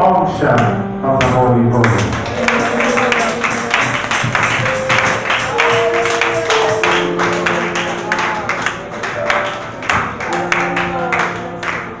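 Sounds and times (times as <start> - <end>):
sustained church chords: 0.0 - 12.0
tambourine shaken: 1.8 - 7.1.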